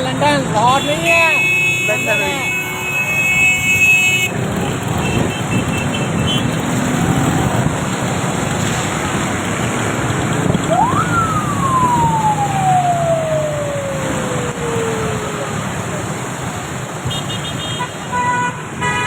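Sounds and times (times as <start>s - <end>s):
street noise: 0.0s - 19.0s
siren rising and falling: 10.6s - 16.6s.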